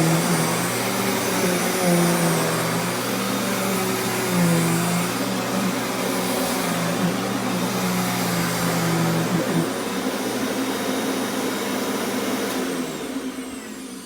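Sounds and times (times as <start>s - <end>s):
upright vacuum cleaner running: 0.0s - 14.0s.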